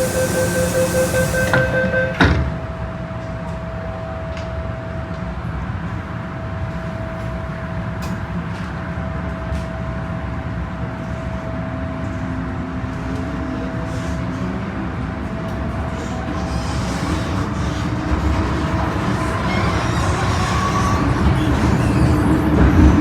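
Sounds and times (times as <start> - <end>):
traction motor whine: 0.0 - 2.3
train doors thump: 0.0 - 2.6
train rumble and electrical hum: 0.0 - 23.0.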